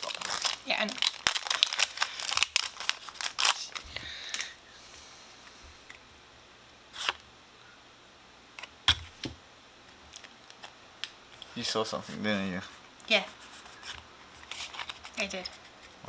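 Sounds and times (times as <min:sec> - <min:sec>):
foil wrapper crinkling: 0:00.0 - 0:04.6.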